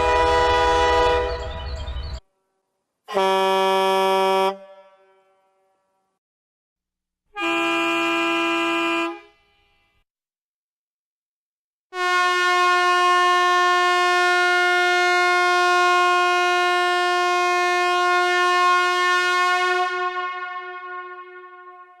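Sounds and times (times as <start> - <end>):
air horn blast: 0.0 - 1.7, 3.1 - 6.0, 7.3 - 10.0, 11.9 - 22.0.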